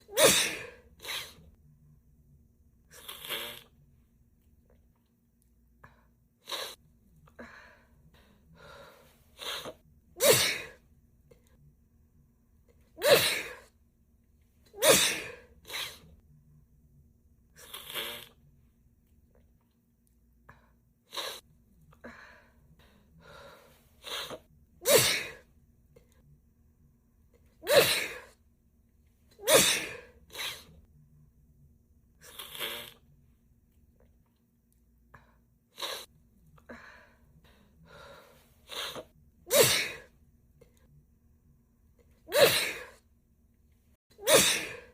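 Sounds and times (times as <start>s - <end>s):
woman sneezing: 0.0s - 1.4s, 9.4s - 10.8s, 13.0s - 13.7s, 14.8s - 16.0s, 24.0s - 25.4s, 27.6s - 28.3s, 29.4s - 30.7s, 38.7s - 40.1s, 42.3s - 43.0s, 44.2s - 44.9s.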